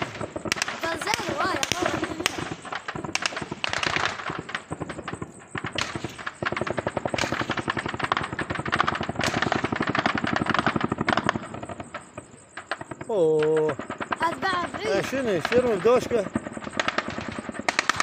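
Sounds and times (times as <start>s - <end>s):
automatic gunfire bursts: 0.0s - 4.5s.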